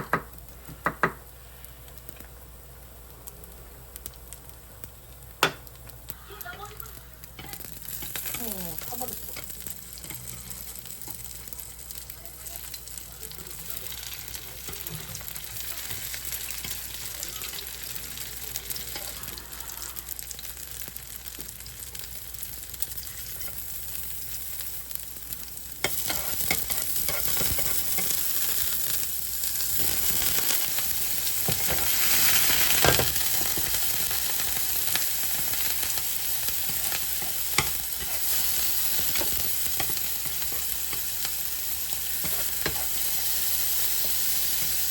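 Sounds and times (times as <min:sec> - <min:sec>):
food sizzling in a frying pan: 0:00.0 - 0:44.9
utensil scraping a pan: 0:25.9 - 0:28.1, 0:36.6 - 0:41.1.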